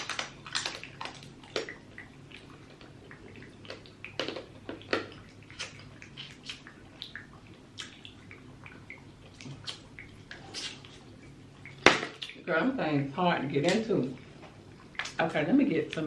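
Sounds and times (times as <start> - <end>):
crawfish shells cracking: 0.0 - 1.8
wet eating squelches and smacks: 0.0 - 12.5, 13.6 - 15.2.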